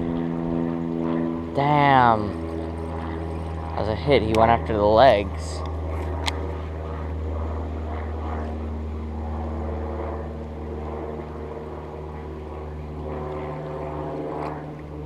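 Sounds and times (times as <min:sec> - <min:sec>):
low engine-like drone: 0:00.0 - 0:15.0.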